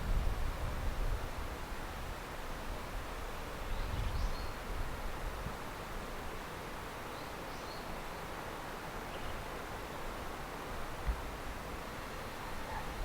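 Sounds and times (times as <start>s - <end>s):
wind rumble on microphone: 0.0s - 5.6s
outdoor background hiss: 0.0s - 13.0s.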